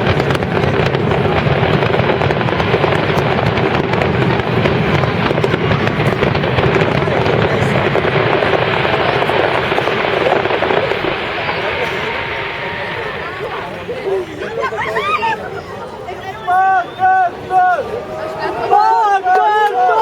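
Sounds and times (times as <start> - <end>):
fireworks crackling bangs: 0.0 - 15.3
crowd voices: 0.0 - 20.0.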